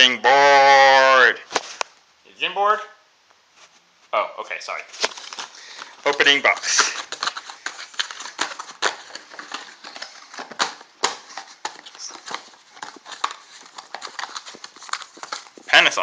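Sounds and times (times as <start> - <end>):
cardboard box being opened: 6.2 - 15.7.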